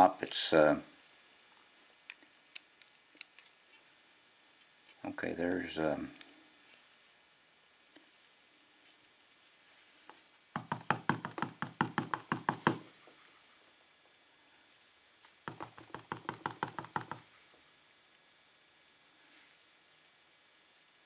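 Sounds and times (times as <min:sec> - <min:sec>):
sharp knocks on lock cylinder: 0:15.5 - 0:17.2.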